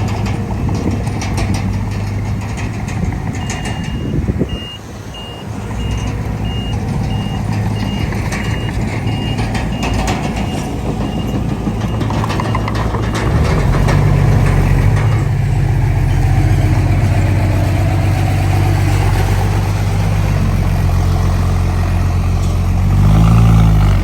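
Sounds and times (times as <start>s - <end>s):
heavy engine running: 0.0s - 24.0s
reversing alarm beeping: 3.4s - 13.4s, 14.6s - 19.5s.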